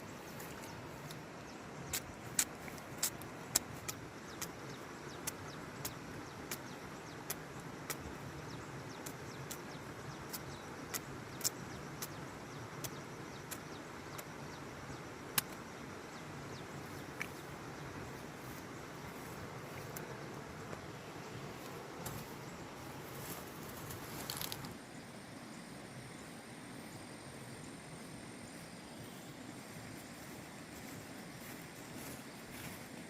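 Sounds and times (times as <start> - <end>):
steady background noise: 0.0 - 33.0
sharp clicks: 15.4 - 15.6.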